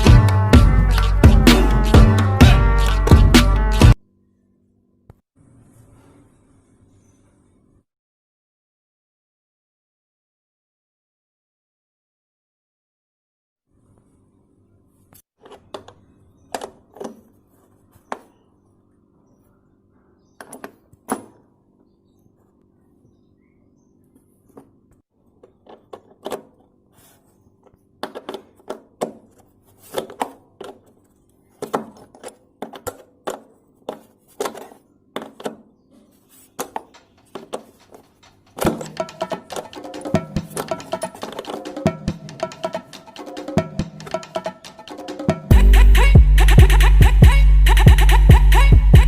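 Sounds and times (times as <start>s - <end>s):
sharp knocks and clatter: 36.6s - 41.8s.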